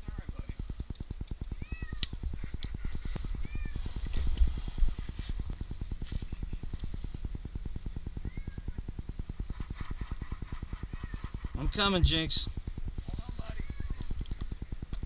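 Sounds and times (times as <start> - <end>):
kitten meowing: 1.6 - 2.1
low rapid throb: 2.2 - 15.0
faint clicks: 13.9 - 15.0.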